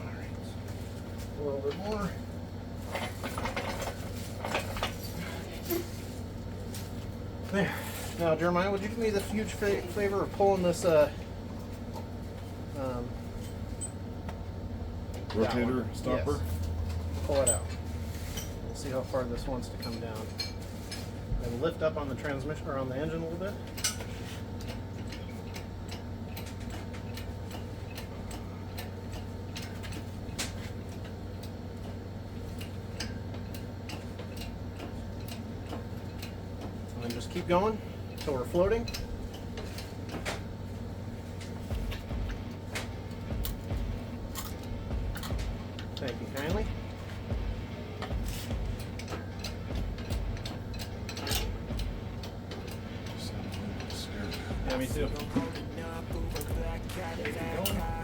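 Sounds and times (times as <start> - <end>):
steady low hum: 0.0 - 58.0
metallic ticking of engine hoist: 21.8 - 40.6, 41.4 - 58.0.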